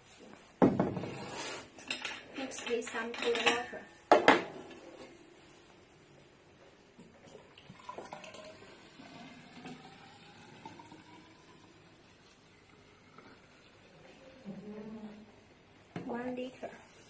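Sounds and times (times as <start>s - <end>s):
water pouring into container: 7.2s - 14.4s.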